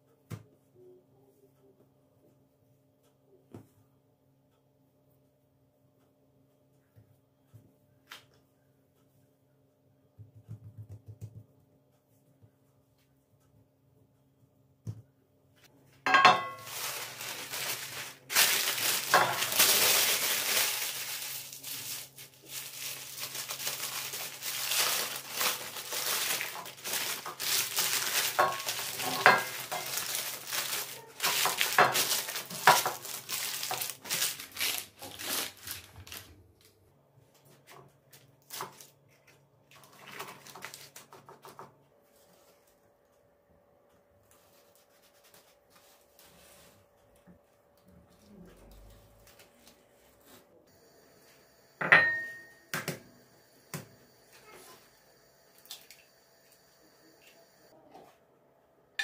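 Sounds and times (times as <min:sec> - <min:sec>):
dishes and utensils clattering: 0:16.1 - 0:17.0, 0:19.0 - 0:19.7, 0:27.3 - 0:30.2, 0:31.2 - 0:33.1, 0:51.8 - 0:52.6.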